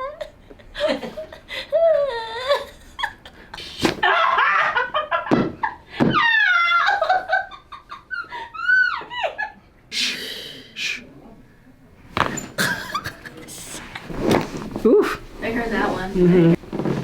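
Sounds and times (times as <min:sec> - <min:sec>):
person laughing: 0:12.6 - 0:13.8.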